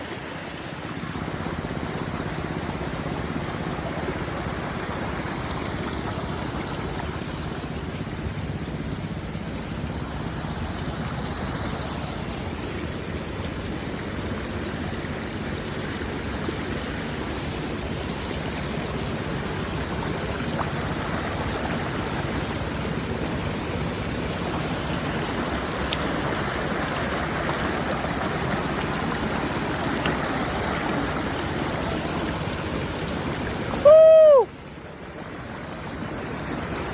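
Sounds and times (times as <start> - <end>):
waterfall rushing: 9.7 - 34.9.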